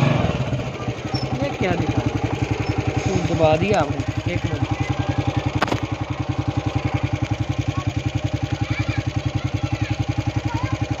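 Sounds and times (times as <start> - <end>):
motorcycle engine idling: 0.0 - 11.0.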